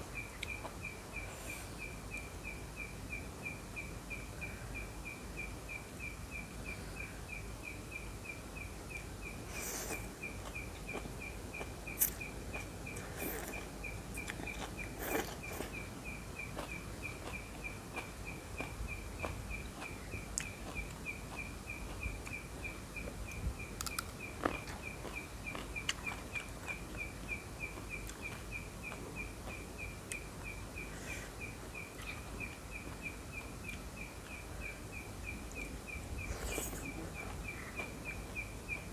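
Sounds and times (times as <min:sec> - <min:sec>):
outdoor background noise: 0:00.0 - 0:38.9
clicks and crunches of eating: 0:08.9 - 0:22.4, 0:23.0 - 0:30.6.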